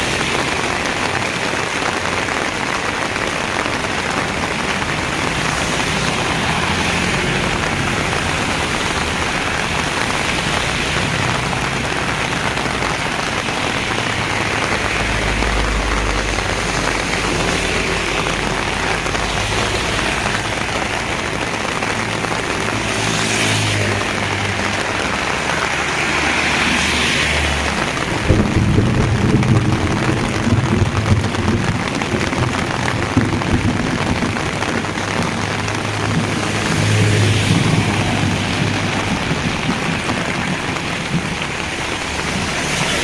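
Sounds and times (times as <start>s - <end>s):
heavy rain pouring: 0.0s - 43.0s.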